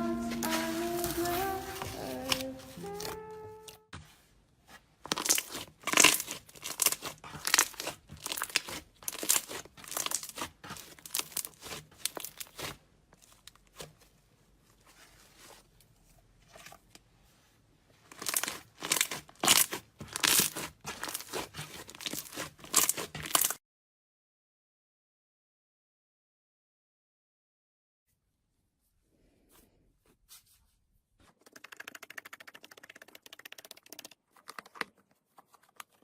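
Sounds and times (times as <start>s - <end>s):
slime crackling: 5.1s - 13.8s, 18.1s - 23.6s.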